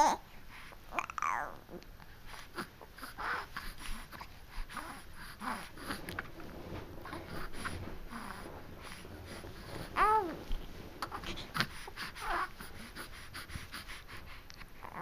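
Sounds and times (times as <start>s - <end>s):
infant mouth sounds: 0.9s - 6.2s, 11.0s - 13.0s
infant vocalizing softly: 0.9s - 6.2s, 7.0s - 15.0s.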